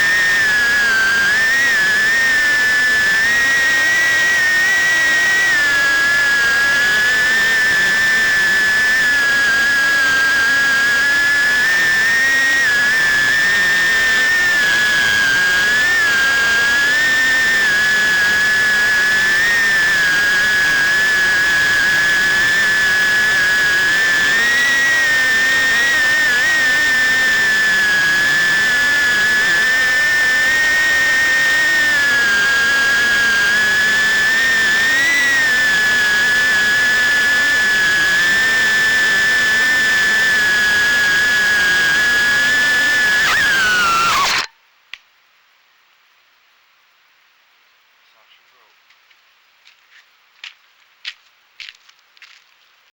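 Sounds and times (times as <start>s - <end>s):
drone motors whining: 0.0s - 44.5s.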